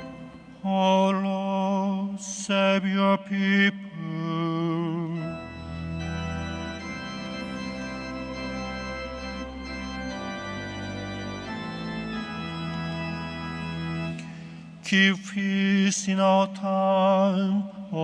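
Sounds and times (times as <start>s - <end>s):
organ playing chords: 0.0s - 18.0s.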